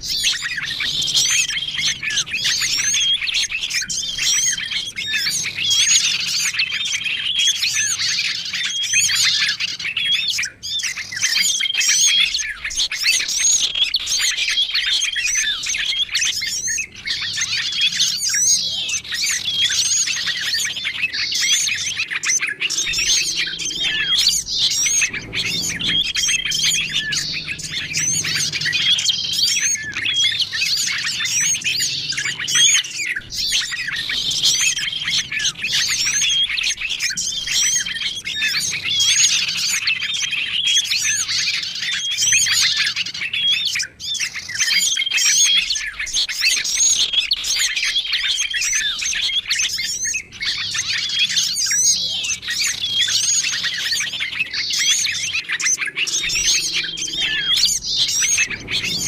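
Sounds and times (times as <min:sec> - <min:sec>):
songbirds chirping and twittering: 0:00.0 - 0:59.0.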